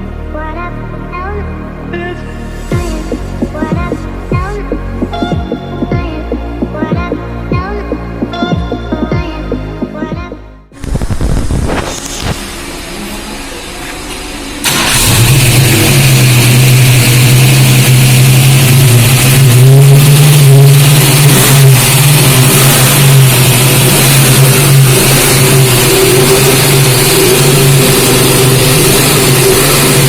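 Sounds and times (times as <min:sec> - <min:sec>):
car engine idling loudly: 0:10.9 - 0:30.0.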